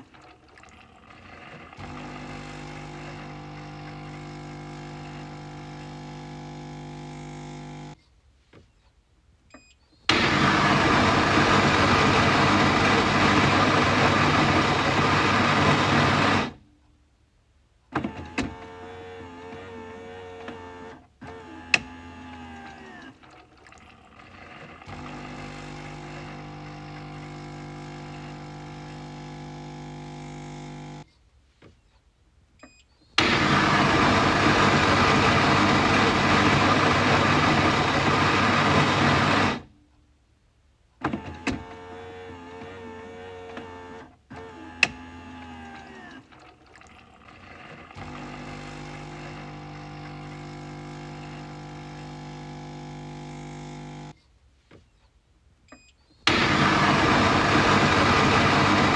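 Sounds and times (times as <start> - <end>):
pump hum: 0.0 - 8.0, 10.1 - 16.6, 22.3 - 31.0, 33.2 - 39.7, 44.6 - 54.1, 56.3 - 58.9.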